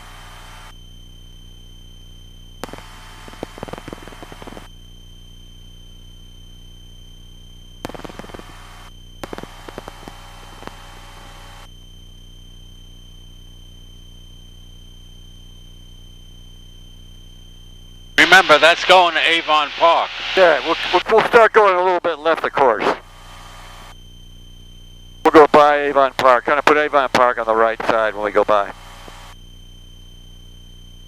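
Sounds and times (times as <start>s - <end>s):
radio hiss and crackle: 0.0s - 0.7s, 2.6s - 4.7s, 7.8s - 11.7s, 18.2s - 24.0s, 25.2s - 29.4s
low hum with high whine: 0.0s - 31.0s.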